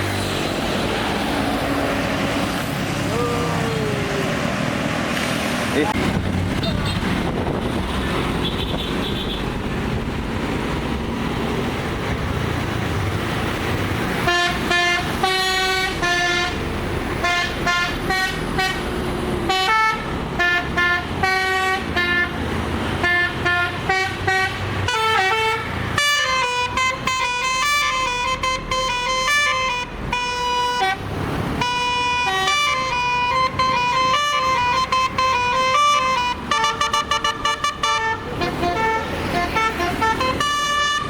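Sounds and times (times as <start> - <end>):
multi-tone musical horn melody: 14.2 - 16.6, 17.2 - 18.8, 19.5 - 22.4, 23.0 - 31.0, 31.6 - 41.0.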